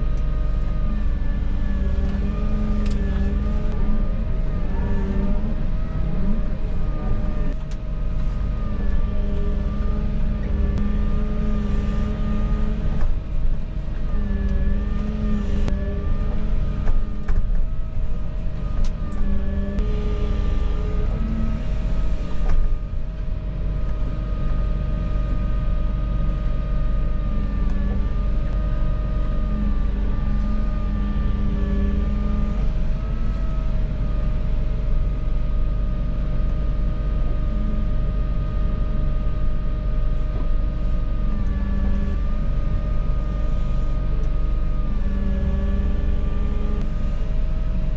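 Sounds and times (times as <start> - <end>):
excavator diesel engine rumble: 0.0 - 47.9
hydraulic whine: 0.0 - 47.9.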